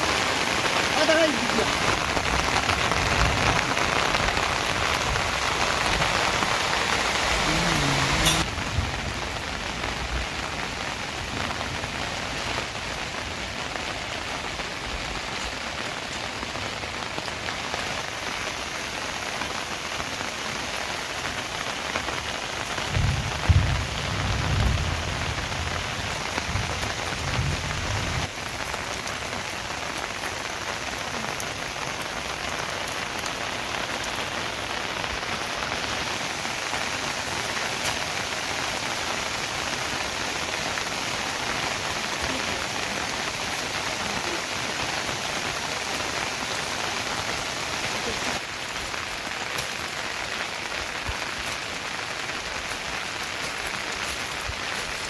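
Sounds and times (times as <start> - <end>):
rain pattering: 0.0 - 55.0.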